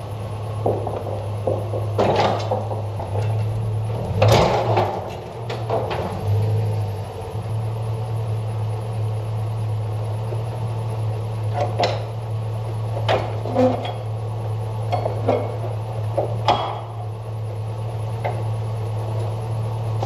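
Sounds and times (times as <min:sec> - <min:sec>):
metal clanks and knocks: 0:00.5 - 0:06.4, 0:11.5 - 0:12.2, 0:12.9 - 0:14.2, 0:14.9 - 0:17.1.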